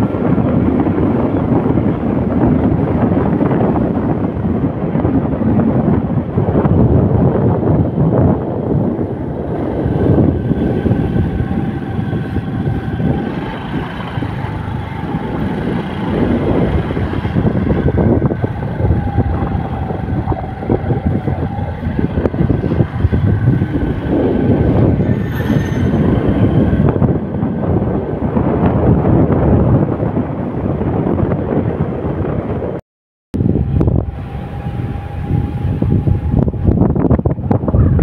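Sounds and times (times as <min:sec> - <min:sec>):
vehicle engine and road rumble: 0:00.0 - 0:32.8, 0:33.4 - 0:38.0
wind buffeting microphone: 0:00.0 - 0:32.8, 0:33.4 - 0:38.0.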